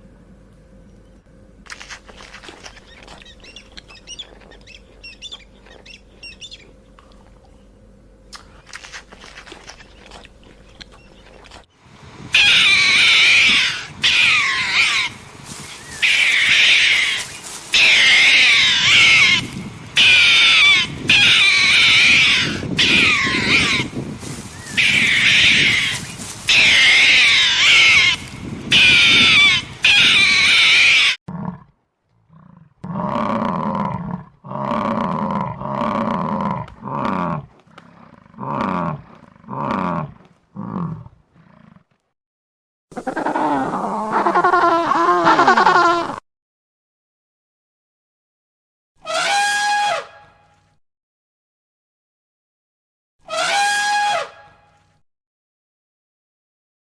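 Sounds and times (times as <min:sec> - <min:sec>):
high-pitched animal calls: 0:02.7 - 0:06.7, 0:12.4 - 0:15.2, 0:15.8 - 0:23.9, 0:24.6 - 0:31.2, 0:42.9 - 0:46.2, 0:49.0 - 0:50.1, 0:53.3 - 0:54.4
lower-pitched animal calls: 0:12.3 - 0:15.2, 0:15.8 - 0:23.9, 0:24.6 - 0:31.2, 0:42.9 - 0:46.2, 0:53.3 - 0:54.3.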